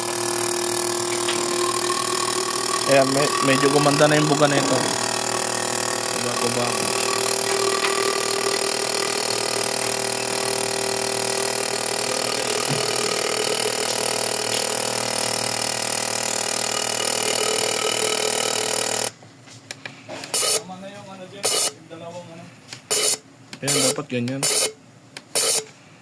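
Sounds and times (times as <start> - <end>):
mechanical buzz of injector tester: 0.0 - 19.2, 20.3 - 20.6, 22.9 - 25.7.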